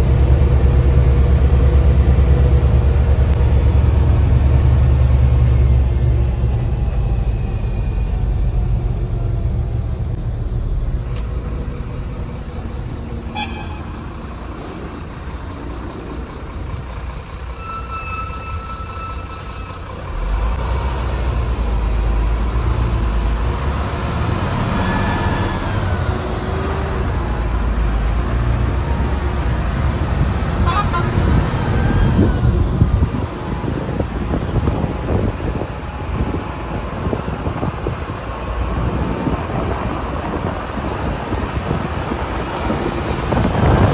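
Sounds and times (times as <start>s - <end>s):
bus diesel engine under load: 0.0s - 43.9s
bus horn: 13.2s - 14.3s, 17.5s - 19.8s, 30.1s - 32.6s
turbo whistle: 17.5s - 19.8s.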